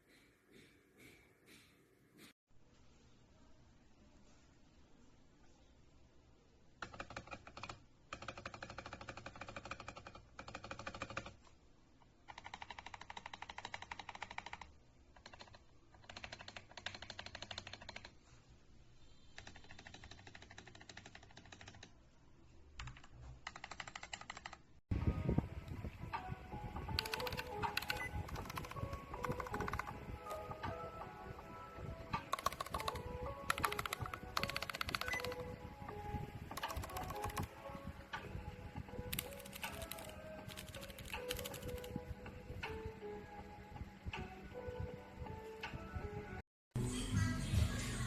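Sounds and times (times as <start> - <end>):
mechanical keyboard clacking: 6.8 - 11.4, 12.3 - 18.1, 19.4 - 21.9, 22.8 - 24.6, 26.9 - 30.7, 32.2 - 35.6, 36.5 - 37.5, 39.1 - 41.9.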